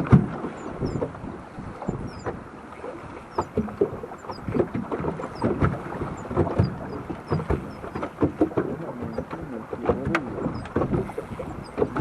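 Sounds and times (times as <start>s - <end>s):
water lapping against boat hull: 0.0s - 12.0s
knocks and clunks: 3.3s - 12.0s.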